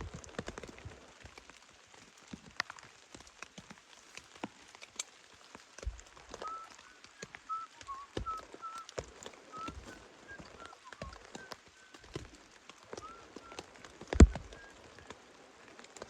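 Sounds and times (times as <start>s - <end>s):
raindrops ticking on tent fabric: 0.0s - 16.0s
high whistle-like notes: 6.4s - 12.1s.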